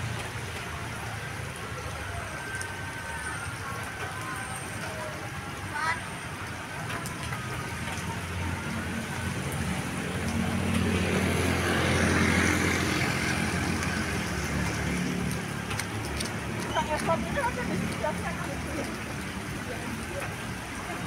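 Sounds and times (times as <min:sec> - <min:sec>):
bus diesel engine passing: 0:05.8 - 0:21.0.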